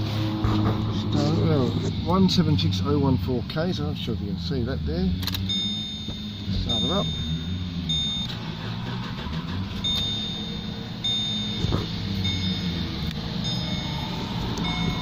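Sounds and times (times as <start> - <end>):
car engine idling: 0.0 - 15.0
high-pitched car warning chime: 5.2 - 15.0.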